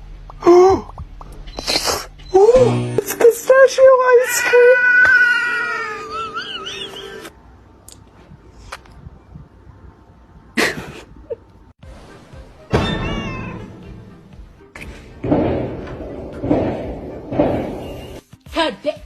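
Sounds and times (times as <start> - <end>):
background music: 11.8 - 19.0
cat meowing: 12.7 - 13.9.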